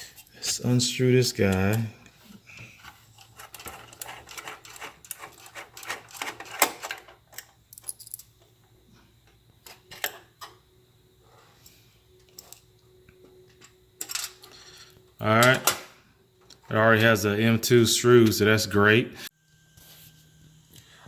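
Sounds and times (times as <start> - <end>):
screwdriver metal clicks and scrapes: 2.8 - 7.5.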